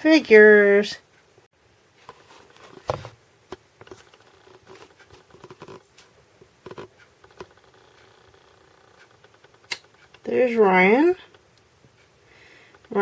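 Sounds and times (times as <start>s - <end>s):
light rustling: 2.0s - 3.2s, 3.8s - 8.1s
faint irregular clicks: 3.5s - 13.0s.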